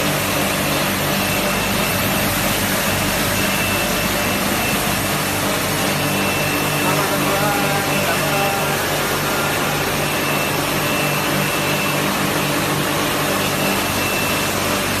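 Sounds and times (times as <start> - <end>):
carpet washing machine running: 0.0 - 15.0
faint high whine: 0.0 - 15.0.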